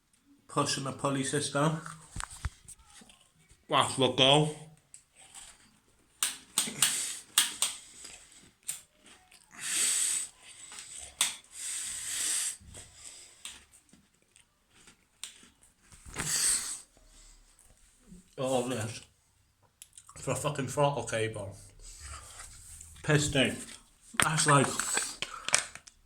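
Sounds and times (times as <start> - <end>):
sharp clicks and taps of cable: 6.2 - 7.8
heavy breathing close to microphone: 9.5 - 13.6, 21.5 - 24.0.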